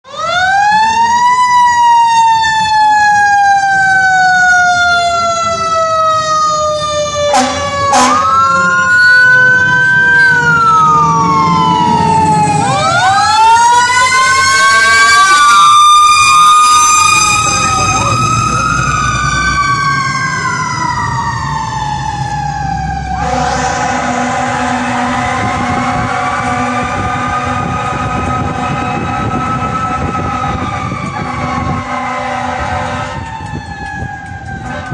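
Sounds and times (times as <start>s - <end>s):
fire engine siren wailing: 0.0s - 34.9s
second siren wail: 0.1s - 34.9s
short horn blasts: 7.3s - 8.7s, 23.2s - 27.9s, 31.3s - 33.2s
steady horn tone: 7.3s - 9.6s, 23.1s - 33.3s.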